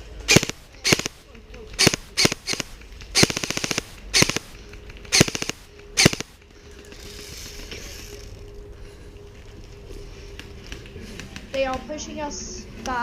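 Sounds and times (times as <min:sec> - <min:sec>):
electric rifle shot bursts: 0:00.2 - 0:06.4.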